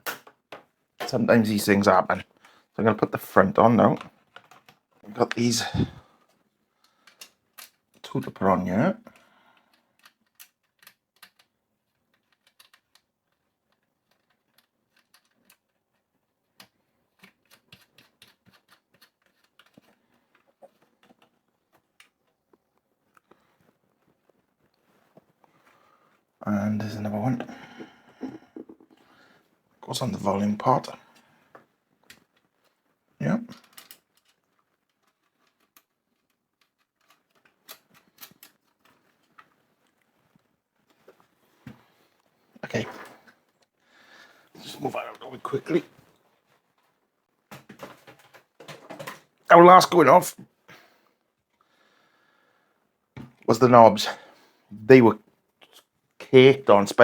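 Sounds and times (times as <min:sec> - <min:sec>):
small plastic parts clicking: 0:06.8 - 0:08.1, 0:09.1 - 0:24.8, 0:33.5 - 0:40.1.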